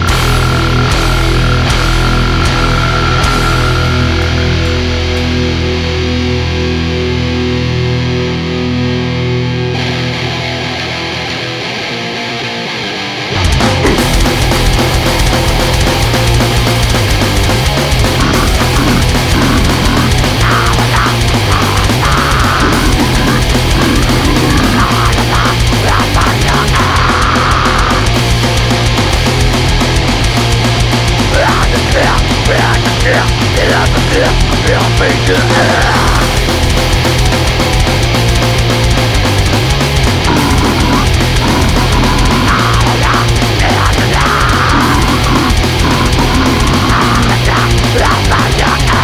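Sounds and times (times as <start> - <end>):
fast drumming: 0.0 - 5.9, 13.4 - 49.0
distorted guitar riffing: 0.0 - 49.0
metal band playing: 0.0 - 49.0.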